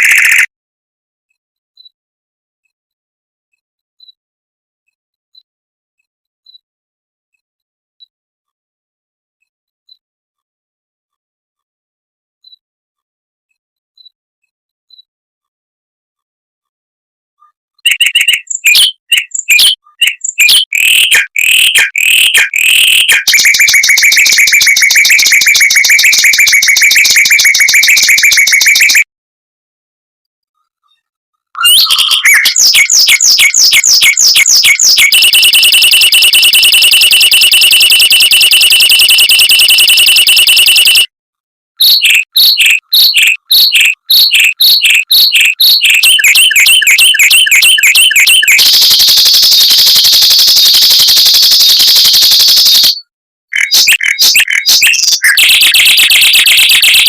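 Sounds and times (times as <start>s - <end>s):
mockingbird singing: 0.0s - 0.5s, 17.8s - 29.0s, 31.6s - 41.1s, 41.8s - 57.0s.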